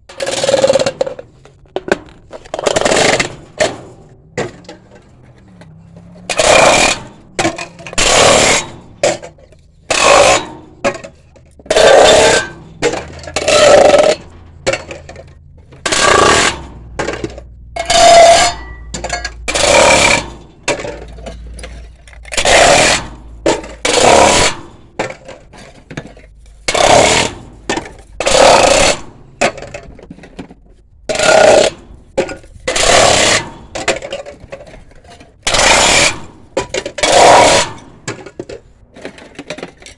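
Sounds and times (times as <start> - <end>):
metal cans being crushed: 0.0 - 39.9
low steady hum: 0.9 - 26.7.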